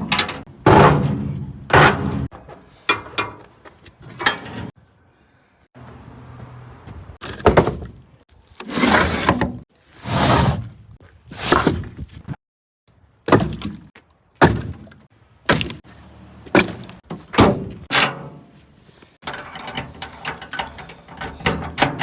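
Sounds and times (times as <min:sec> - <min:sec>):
firewood thunking and clattering: 0:00.0 - 0:02.6, 0:07.2 - 0:09.6, 0:13.2 - 0:15.9, 0:16.5 - 0:18.3.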